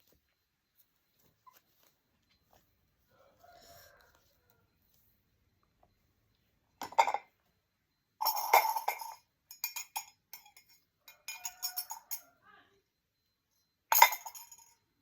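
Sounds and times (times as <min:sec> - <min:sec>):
utensil clinking against glass: 0:08.2 - 0:12.2.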